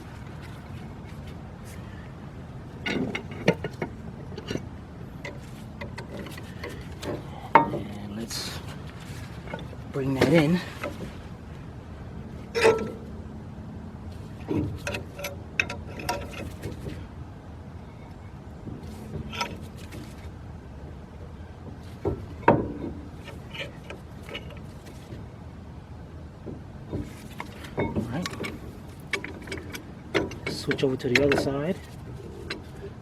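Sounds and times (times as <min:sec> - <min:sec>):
metallic clicks and knocks of clamp: 0:02.8 - 0:07.8, 0:14.4 - 0:17.0, 0:19.1 - 0:20.2, 0:26.4 - 0:33.0.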